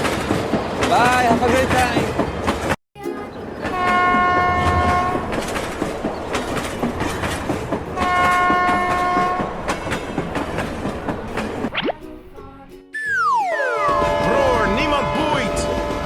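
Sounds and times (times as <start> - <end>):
train wheels clattering on rails: 0.0 - 2.8, 3.4 - 11.7
train horn blasts: 3.8 - 5.4, 8.0 - 9.5, 13.7 - 16.0.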